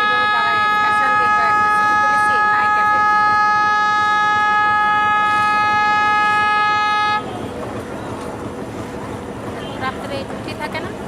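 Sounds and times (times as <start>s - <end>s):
locomotive air horn: 0.0s - 7.4s
freight train rumbling: 0.0s - 11.0s.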